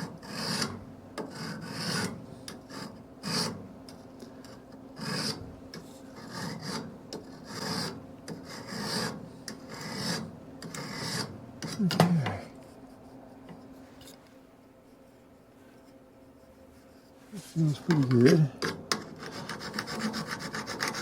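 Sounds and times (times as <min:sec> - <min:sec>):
hand file rasping on steel: 0:00.1 - 0:03.6, 0:04.4 - 0:12.0, 0:16.4 - 0:21.0.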